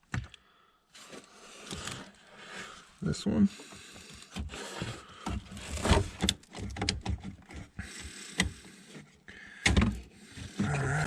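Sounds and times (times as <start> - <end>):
wiring harness rustling: 1.0 - 3.0.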